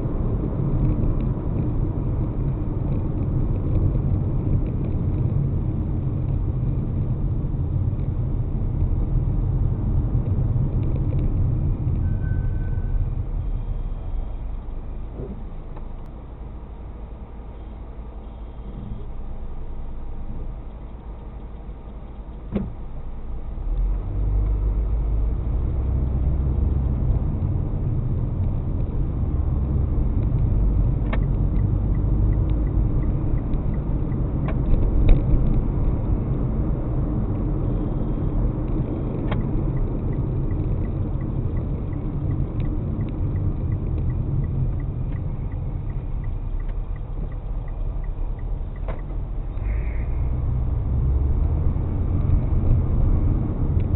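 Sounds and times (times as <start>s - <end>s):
road and engine rumble: 0.0s - 53.9s
faint regular ticking: 38.7s - 49.2s.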